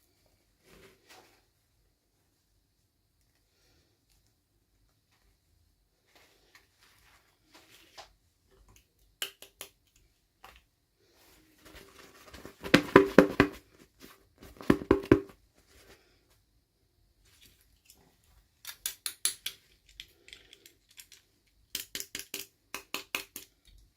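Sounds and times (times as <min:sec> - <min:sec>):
plastic toy pieces clicking: 0:18.6 - 0:23.8.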